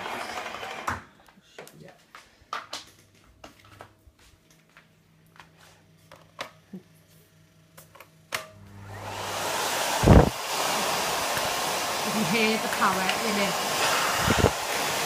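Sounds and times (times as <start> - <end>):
vacuum cleaner motor running: 0.0 - 1.0, 8.5 - 15.0.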